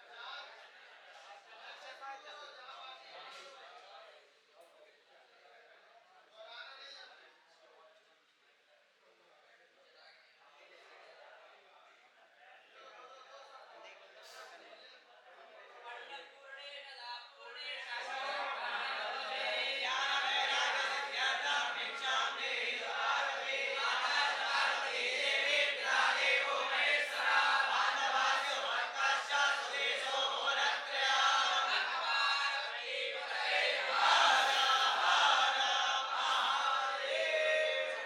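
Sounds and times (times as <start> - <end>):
group chanting in chorus: 17.8 - 38.0.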